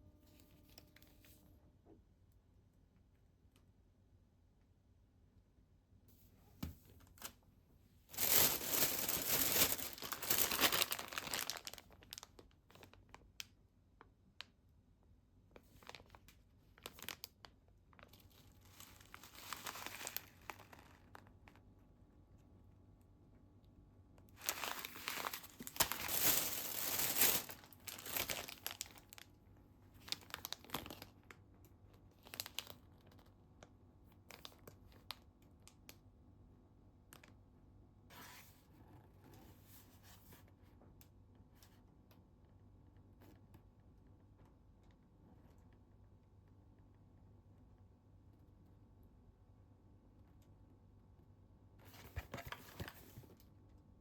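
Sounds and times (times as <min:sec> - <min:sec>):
packaging crinkling and tearing: 0:08.1 - 0:13.2, 0:15.7 - 0:17.4, 0:18.0 - 0:21.6, 0:24.4 - 0:29.2, 0:30.0 - 0:31.2, 0:32.2 - 0:33.3.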